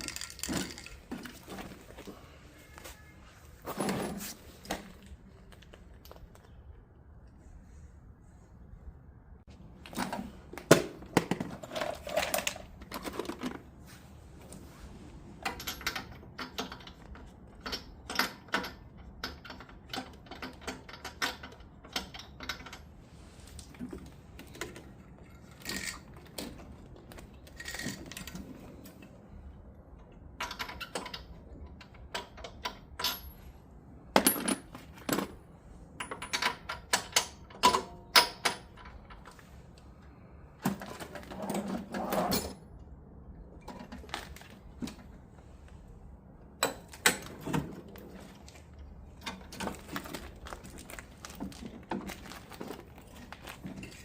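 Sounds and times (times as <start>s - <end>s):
metal tools clinking: 0.0s - 1.8s.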